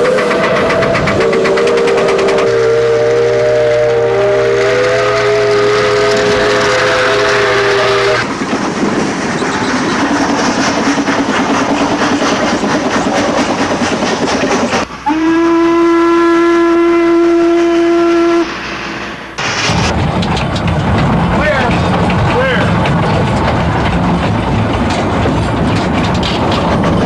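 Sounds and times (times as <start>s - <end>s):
single-note train whistle: 0.0s - 8.2s, 15.0s - 18.5s
train whistle chord: 0.0s - 8.2s, 15.0s - 18.5s
train clattering on track: 0.0s - 15.1s, 17.4s - 27.0s.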